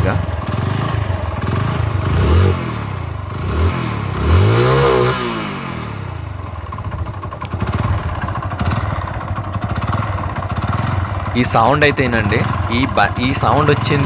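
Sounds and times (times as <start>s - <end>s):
motorcycle engine revving: 0.0s - 14.0s
engine idling with rattling knock: 6.2s - 14.0s.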